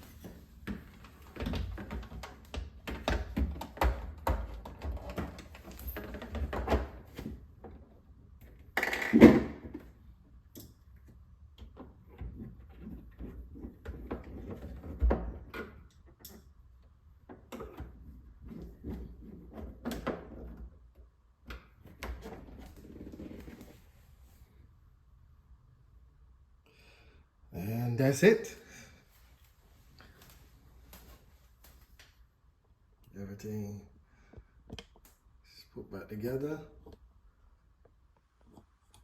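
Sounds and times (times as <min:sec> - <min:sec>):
refrigerator parts knocking and rattling: 0:00.0 - 0:07.8, 0:11.5 - 0:16.4.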